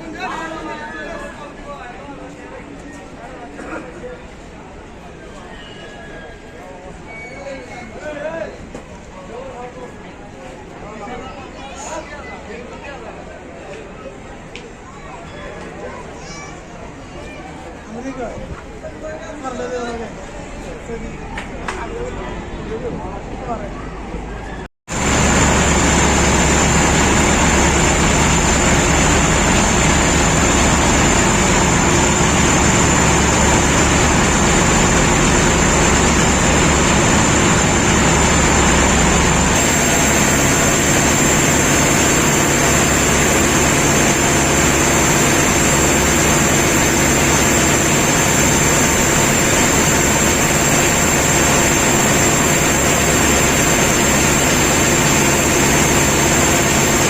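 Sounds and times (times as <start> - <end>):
boat engine low rumble: 24.9 - 57.0
thin high engine whine: 24.9 - 57.0.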